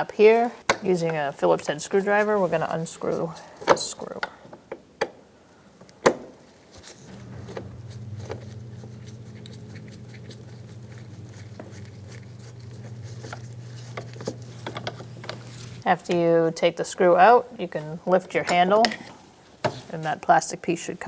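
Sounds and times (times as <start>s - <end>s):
steady low hum: 7.1s - 15.9s
screwdriver backing out screw: 7.2s - 15.8s.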